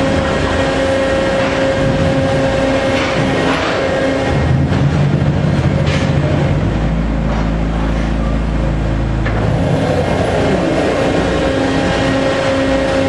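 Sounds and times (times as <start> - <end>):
deep rumble: 0.0 - 13.0
machine humming: 0.0 - 13.0.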